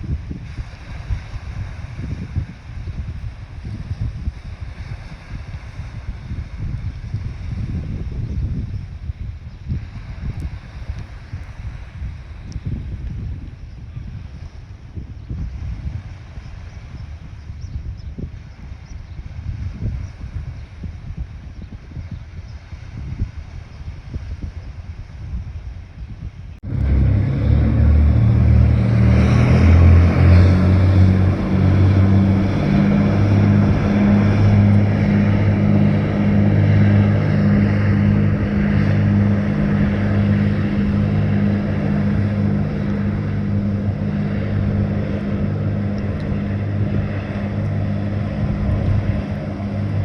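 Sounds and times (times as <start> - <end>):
vehicle engine running: 26.6 - 50.0.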